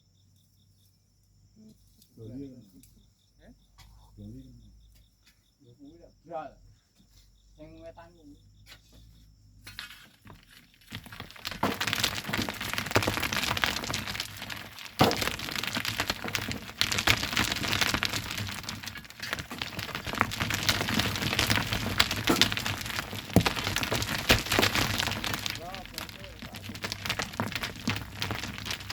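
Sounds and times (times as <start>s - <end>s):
sand and stones being shovelled: 9.6s - 28.9s.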